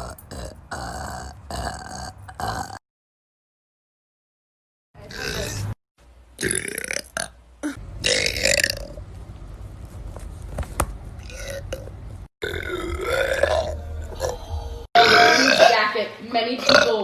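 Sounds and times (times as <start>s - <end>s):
person burping: 0.0s - 2.8s, 5.0s - 5.8s, 6.4s - 8.9s, 11.3s - 15.9s, 16.6s - 17.0s.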